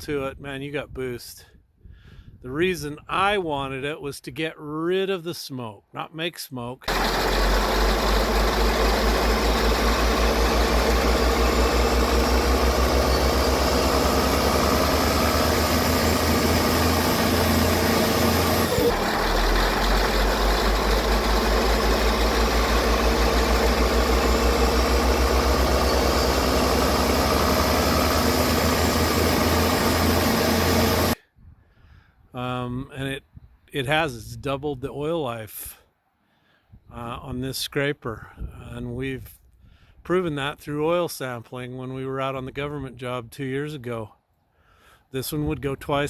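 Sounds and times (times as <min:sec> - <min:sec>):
diesel engine running: 0:06.9 - 0:31.2.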